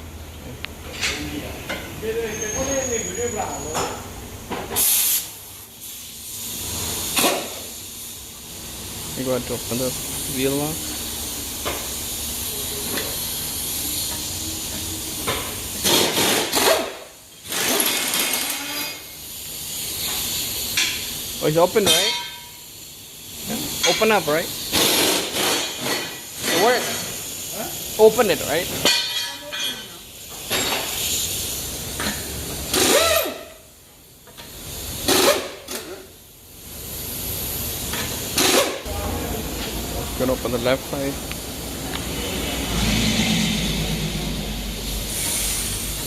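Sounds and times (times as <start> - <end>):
pneumatic impact wrench: 3.7 - 8.3, 9.8 - 38.9, 44.8 - 46.0
air hiss: 4.6 - 46.0.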